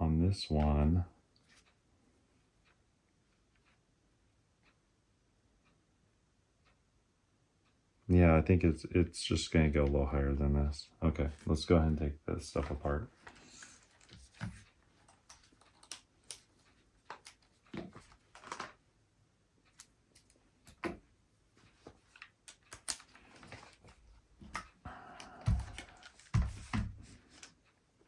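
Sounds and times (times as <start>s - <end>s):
small parts and tools clicking: 13.3s - 18.8s, 19.6s - 21.0s, 22.0s - 24.8s.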